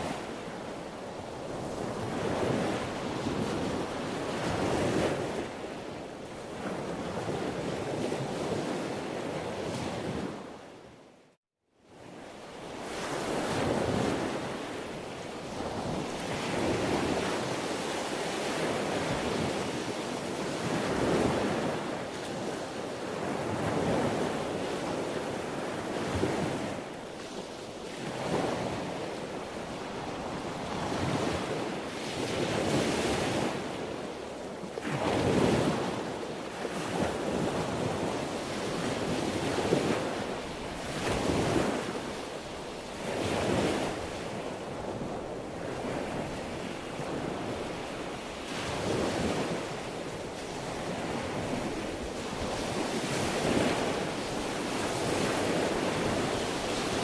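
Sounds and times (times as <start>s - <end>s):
sea waves breaking: 15.4s - 57.0s.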